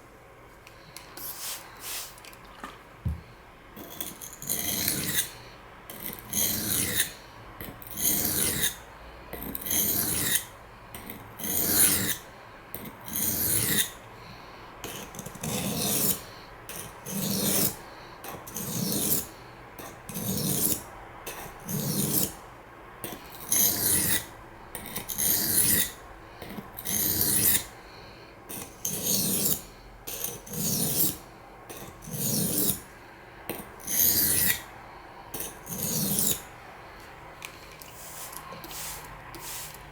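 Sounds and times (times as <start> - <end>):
knife scraping on sharpening stone: 1.2 - 2.0, 3.8 - 5.3, 5.9 - 7.1, 7.9 - 8.8, 9.4 - 14.0, 14.9 - 17.8, 18.5 - 22.3, 23.4 - 26.0, 26.8 - 27.7, 28.5 - 32.8, 33.8 - 34.6, 35.4 - 36.5, 37.9 - 39.9.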